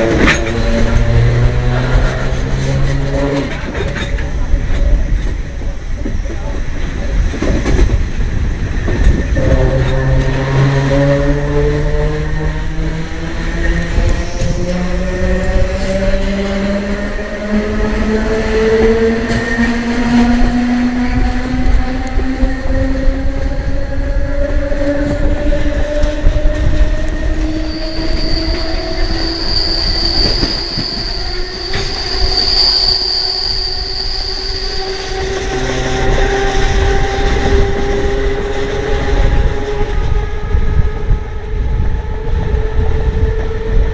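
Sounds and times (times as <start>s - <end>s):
wheels rumbling on rail: 0.0s - 43.9s
electric train motor whine: 9.0s - 43.9s
high wheel squeal: 26.8s - 38.5s.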